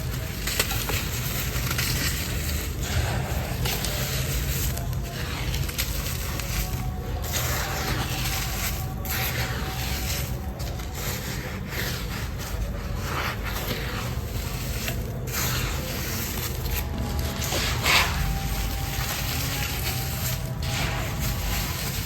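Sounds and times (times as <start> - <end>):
gritty crumbling crackle: 0.0 - 22.0.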